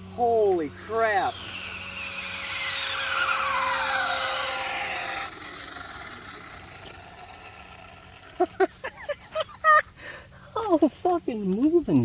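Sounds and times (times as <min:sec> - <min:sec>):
electric motor whining: 0:00.0 - 0:09.2
faint chirping: 0:00.0 - 0:12.0.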